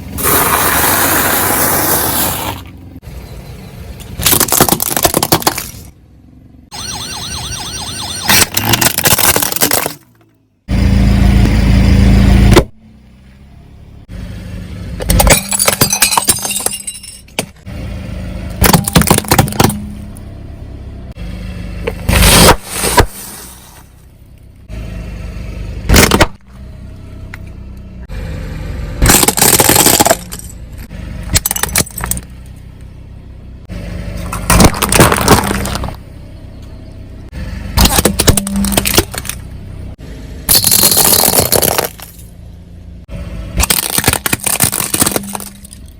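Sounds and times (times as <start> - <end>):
objects crunching under tyres: 0.0 - 3.0, 4.0 - 6.0, 8.3 - 10.4, 18.5 - 20.4, 21.8 - 24.7, 29.0 - 33.3, 34.1 - 42.6, 43.4 - 45.9
car low hum: 0.0 - 45.9.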